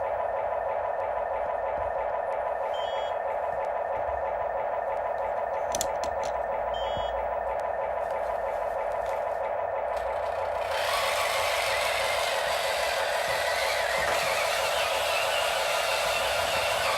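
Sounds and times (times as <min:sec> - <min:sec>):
electronic beeping: 0:02.6 - 0:03.2, 0:06.7 - 0:07.8
electric motors whining: 0:09.1 - 0:16.9.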